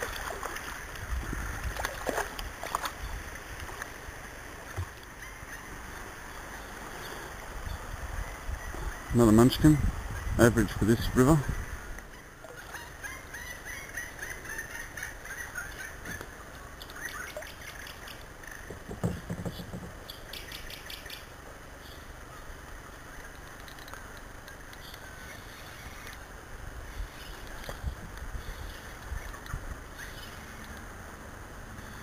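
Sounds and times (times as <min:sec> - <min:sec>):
river flowing: 0:00.0 - 0:09.5, 0:11.2 - 0:32.0
birds chirping and calling: 0:04.6 - 0:22.1, 0:26.9 - 0:30.8
knock: 0:18.7 - 0:20.0.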